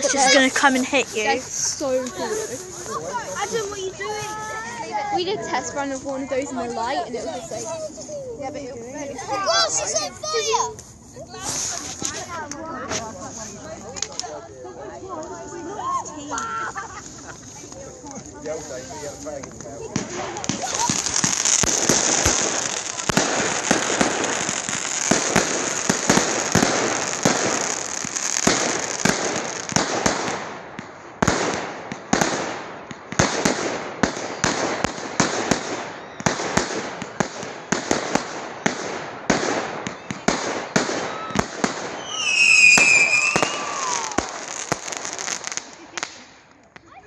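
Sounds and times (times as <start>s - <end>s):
fireworks crackling and banging: 0.0s - 47.0s
high whistling firework: 18.5s - 30.5s, 31.2s - 46.4s.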